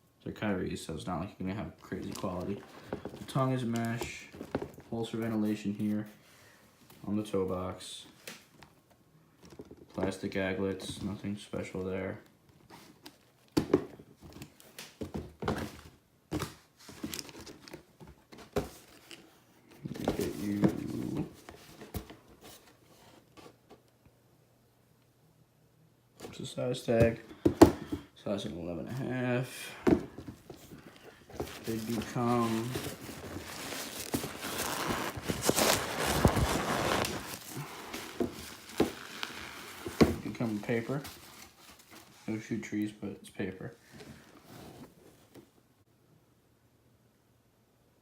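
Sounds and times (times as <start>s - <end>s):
sneaker handling thunks and taps: 2.0s - 4.9s, 13.5s - 18.8s, 26.9s - 28.1s, 29.8s - 39.2s, 39.8s - 41.1s
paper rustling and crinkling: 15.5s - 23.6s, 30.2s - 42.3s.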